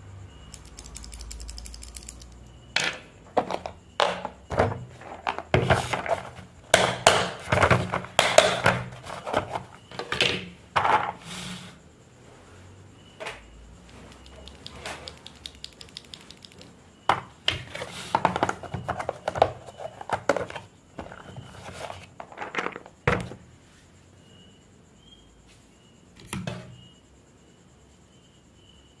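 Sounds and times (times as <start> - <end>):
mechanical keyboard key clicks: 0.5 - 2.4, 14.2 - 16.7.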